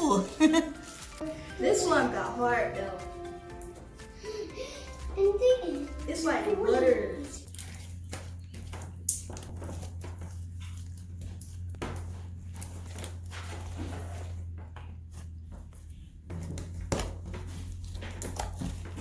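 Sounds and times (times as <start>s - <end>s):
steady low hum: 0.0s - 19.0s
slime squelching and clicking: 7.4s - 11.6s.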